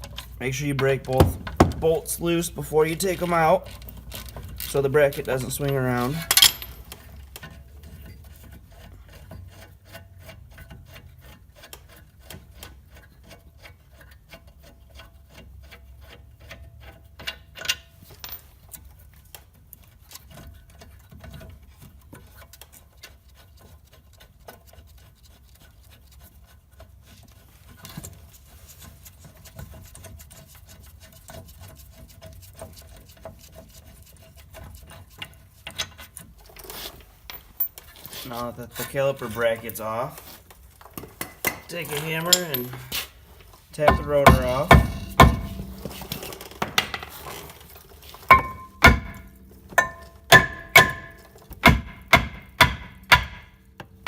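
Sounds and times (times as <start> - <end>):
metal knocks: 0.8 - 2.1, 6.2 - 7.0, 43.8 - 47.5, 48.3 - 54.0.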